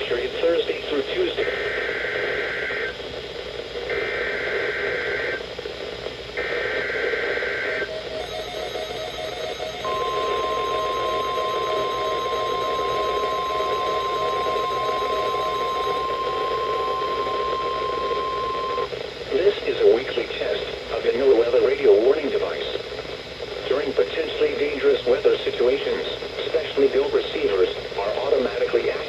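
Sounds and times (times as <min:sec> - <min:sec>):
radio speaker hiss: 0:00.0 - 0:08.1, 0:09.8 - 0:29.0
steady warning alarm tone: 0:06.4 - 0:18.9
digital data bursts: 0:06.4 - 0:19.8.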